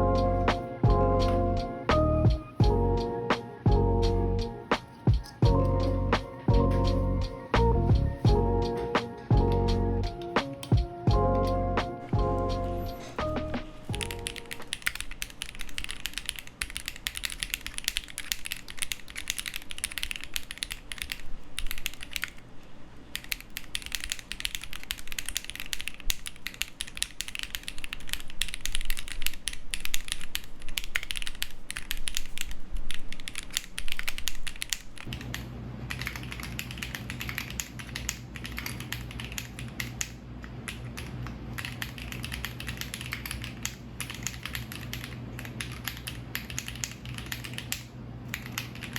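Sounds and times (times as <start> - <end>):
steady low hum: 0.0 - 14.7
mechanical keyboard typing: 13.9 - 22.4, 23.1 - 48.9.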